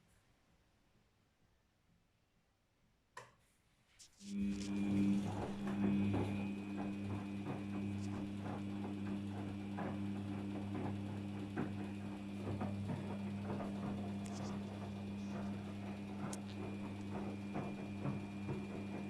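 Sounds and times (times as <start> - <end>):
washing machine motor hum: 4.1 - 19.0
water swishing in drum: 4.3 - 19.0.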